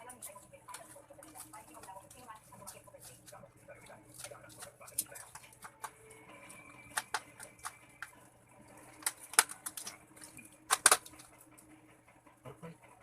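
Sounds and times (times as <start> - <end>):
sharp clicks and taps: 10.7 - 11.3.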